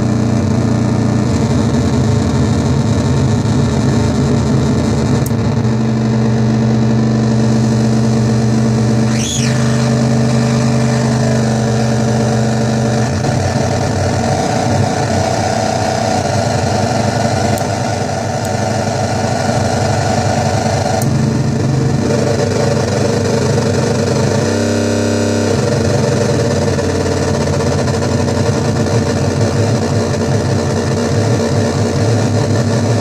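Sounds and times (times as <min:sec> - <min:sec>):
buzzing synth drone: 0:00.0 - 0:33.0
synth squeal sweeping up and down: 0:08.9 - 0:12.3.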